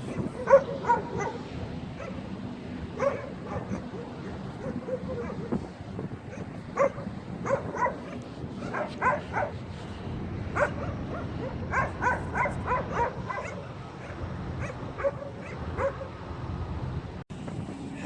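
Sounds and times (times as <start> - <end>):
dog barking and yipping: 0.0 - 1.4, 2.0 - 2.3, 3.0 - 5.6, 6.3 - 9.6, 10.5 - 16.2
steady low rumble: 0.0 - 18.0.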